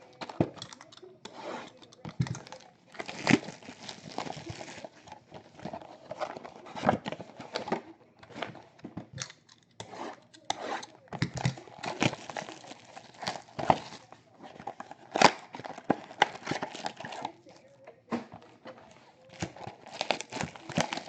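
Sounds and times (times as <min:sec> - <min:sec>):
wrappers crinkling as torn open: 0:02.2 - 0:06.5, 0:11.4 - 0:17.6, 0:19.2 - 0:21.0.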